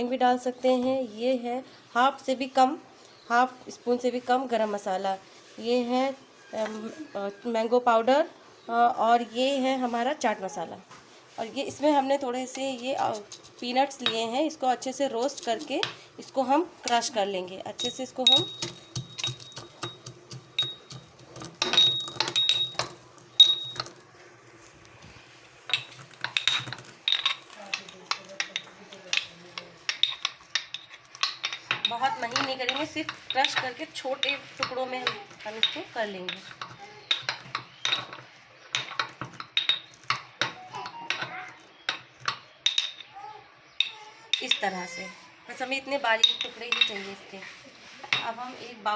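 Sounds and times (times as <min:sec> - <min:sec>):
peanuts being crushed: 0:17.8 - 0:24.1, 0:25.8 - 0:43.1
faint rubbing: 0:46.5 - 0:48.9.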